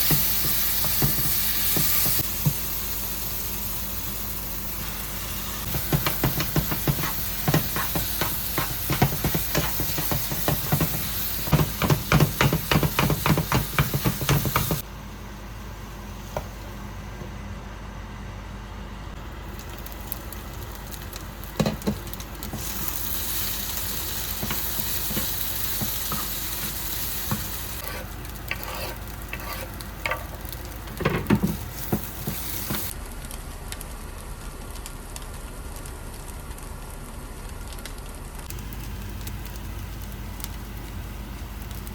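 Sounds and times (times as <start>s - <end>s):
chicken sizzling in a frying pan: 0.0s - 14.8s, 19.2s - 33.0s, 38.5s - 41.9s
utensil scraping a pan: 5.6s - 14.8s, 24.2s - 32.9s.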